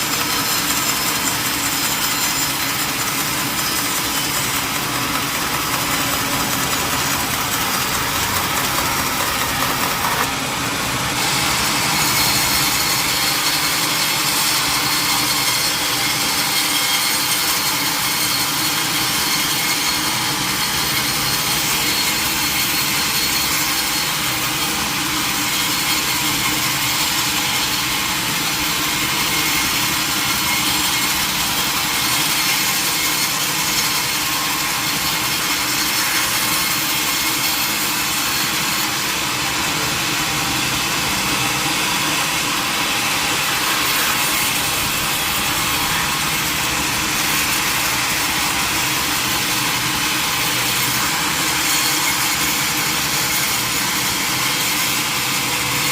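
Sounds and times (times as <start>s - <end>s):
mill saw cutting log: 0.0s - 55.9s.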